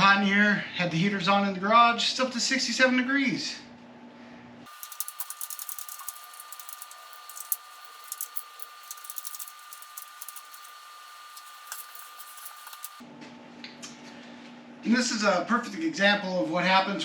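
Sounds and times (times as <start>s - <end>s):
irregular clicks: 4.7s - 13.0s
small power tool whining: 4.7s - 13.0s.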